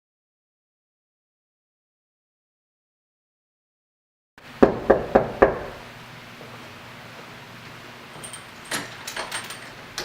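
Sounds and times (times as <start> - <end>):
knocks on a door: 4.6 - 5.8.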